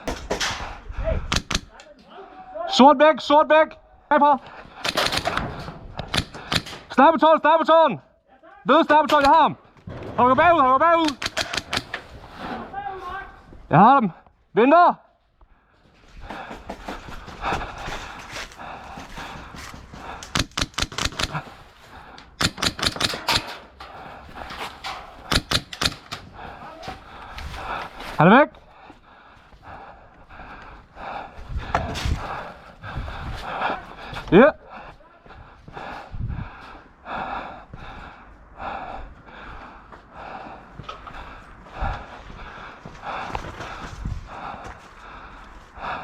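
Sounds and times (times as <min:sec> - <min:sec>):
heavy rhythmic breathing: 0:04.4 - 0:07.1, 0:10.9 - 0:12.6, 0:15.4 - 0:46.0
airsoft gun firing bursts: 0:04.8 - 0:06.8, 0:11.0 - 0:12.0, 0:20.4 - 0:21.4, 0:22.4 - 0:23.5.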